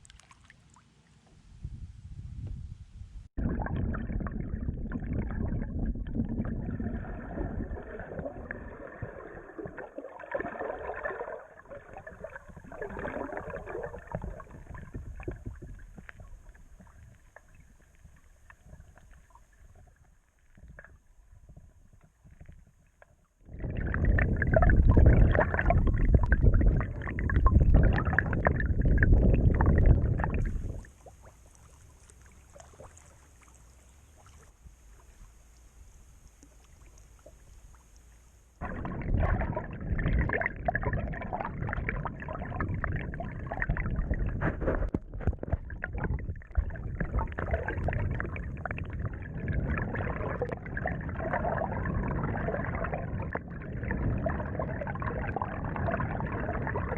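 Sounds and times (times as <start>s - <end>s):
water sloshing from paddling: 29.8s - 35.5s.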